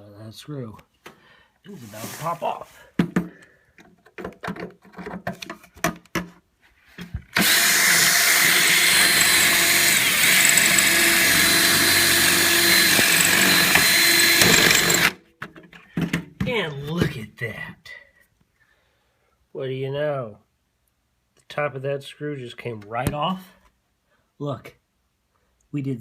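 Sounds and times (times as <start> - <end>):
power drill running at high speed: 7.4 - 15.2.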